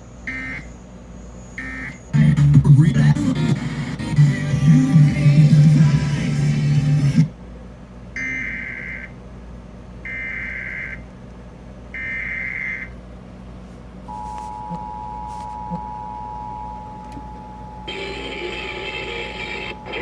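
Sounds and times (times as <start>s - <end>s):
two-tone attention signal: 14.1s - 20.0s
digital data tone bursts: 17.9s - 20.0s.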